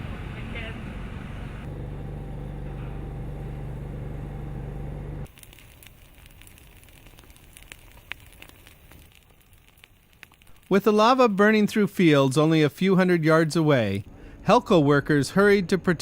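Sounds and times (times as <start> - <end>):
low engine-like drone: 0.0 - 5.3
vegetation crackling as it burns: 5.2 - 13.0.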